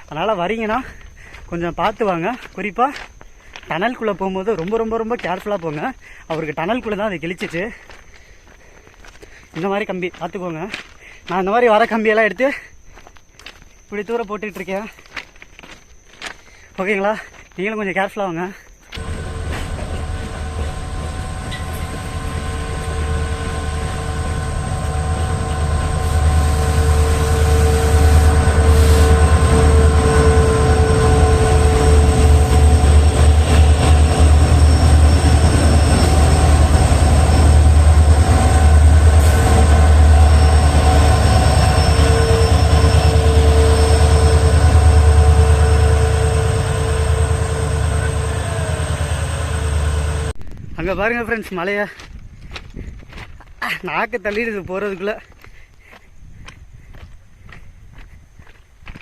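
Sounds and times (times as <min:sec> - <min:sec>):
train wheels squealing: 0:19.0 - 0:50.3
train rumbling past: 0:19.0 - 0:50.4.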